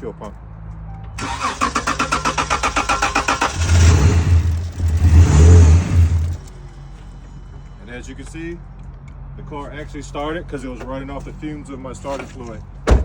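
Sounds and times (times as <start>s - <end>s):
car engine cranking: 1.2s - 6.6s
car engine running: 1.2s - 7.3s.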